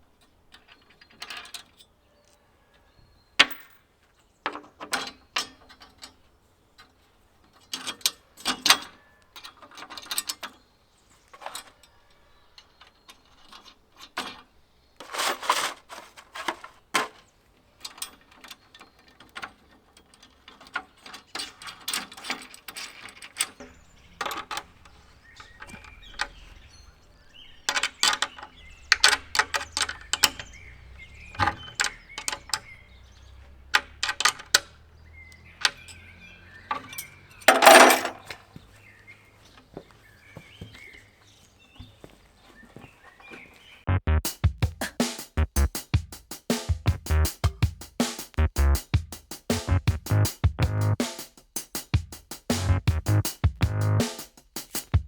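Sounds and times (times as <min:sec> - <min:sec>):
hand tools clattering: 0:00.1 - 0:02.0, 0:03.4 - 0:40.0.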